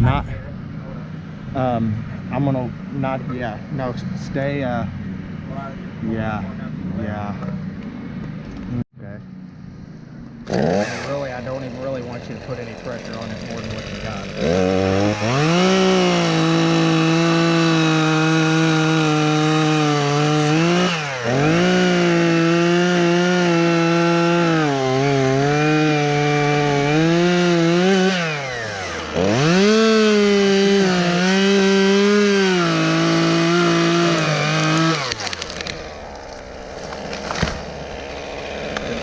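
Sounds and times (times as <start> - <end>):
chainsaw cutting wood: 10.4 - 39.0.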